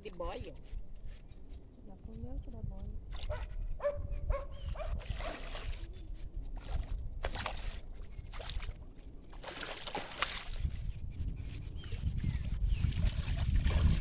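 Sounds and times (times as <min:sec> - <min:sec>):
wind rumble on microphone: 0:00.0 - 0:14.0
water splashing and sloshing: 0:03.0 - 0:03.6, 0:04.8 - 0:14.0.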